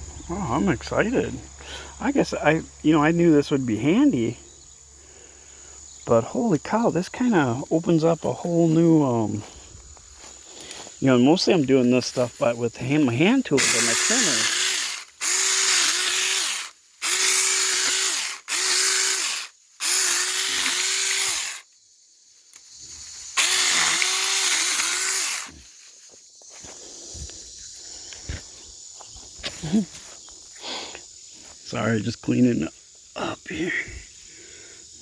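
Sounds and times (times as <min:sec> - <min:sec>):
electric chainsaw cutting wood: 0:13.6 - 0:21.6, 0:23.4 - 0:25.6.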